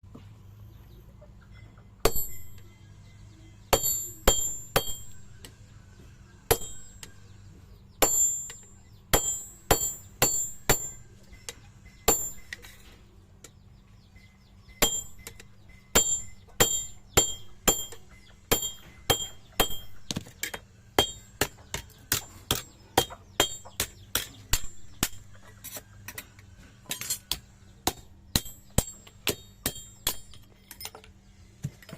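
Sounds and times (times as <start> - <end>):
hammer striking steel: 2.0 - 2.7, 3.7 - 5.6, 6.4 - 7.4, 8.0 - 12.9, 14.6 - 25.5, 26.9 - 30.9.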